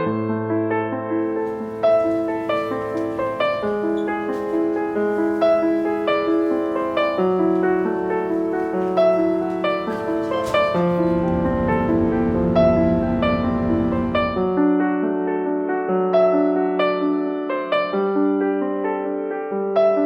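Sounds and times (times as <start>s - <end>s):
gentle piano piece: 0.0s - 20.0s.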